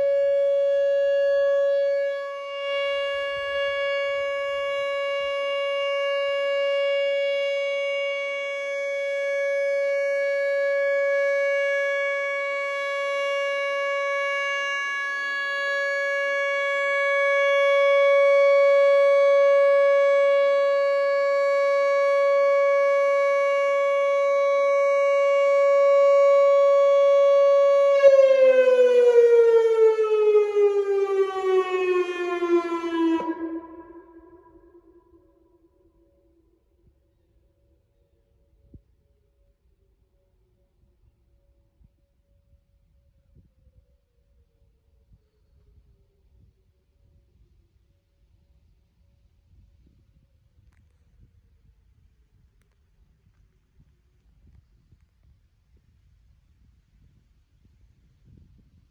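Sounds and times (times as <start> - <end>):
warning siren steady tone: 0.0 - 40.1.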